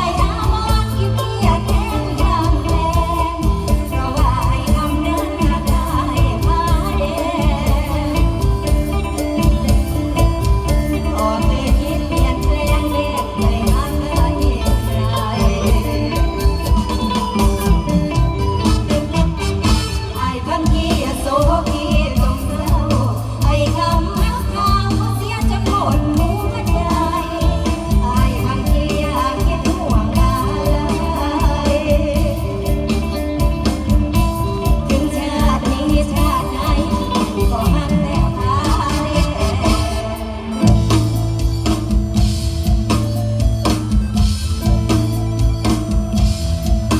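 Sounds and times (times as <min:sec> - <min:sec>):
person singing: 0:00.0 - 0:33.5
steady drum beat: 0:00.0 - 0:46.9.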